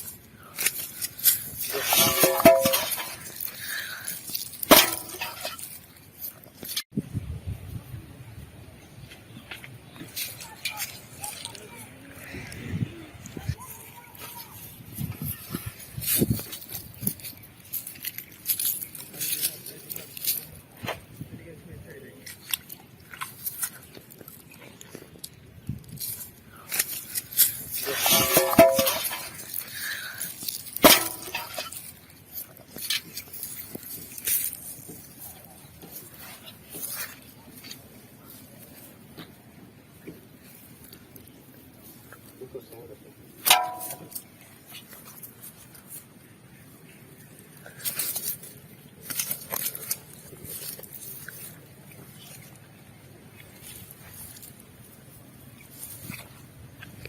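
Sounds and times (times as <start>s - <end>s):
water splashing and sloshing: 27.7s - 29.7s.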